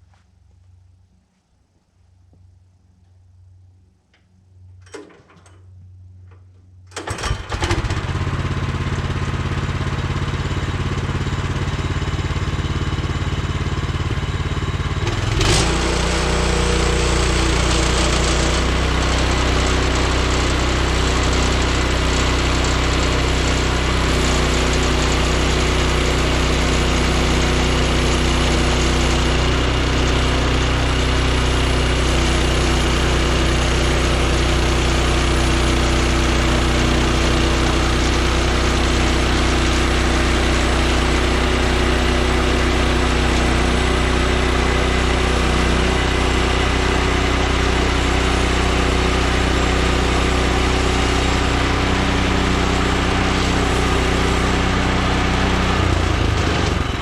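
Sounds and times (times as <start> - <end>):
sawmill gas engine running: 6.9 - 57.0.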